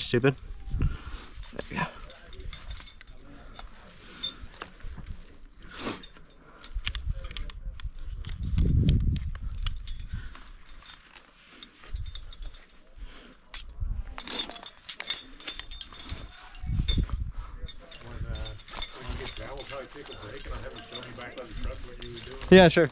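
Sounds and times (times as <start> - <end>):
wind rumbling on microphone: 0.0 - 3.2, 6.6 - 10.9, 15.4 - 22.9
metal climbing gear clinking: 0.0 - 22.9.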